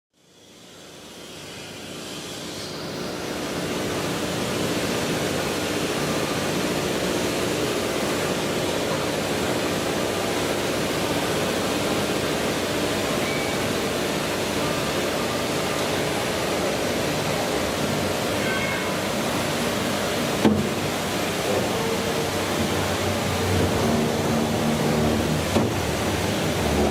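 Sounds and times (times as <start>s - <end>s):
milling machine running: 0.5s - 26.9s.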